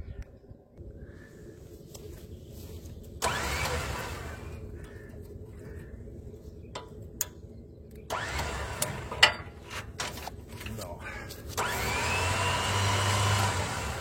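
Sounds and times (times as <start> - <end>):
electric winch motor running: 3.2 - 5.0, 8.1 - 9.5, 11.6 - 14.0.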